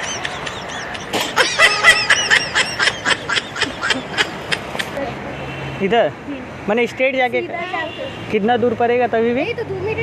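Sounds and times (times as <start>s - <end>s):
high-pitched laughter: 0.0s - 5.0s.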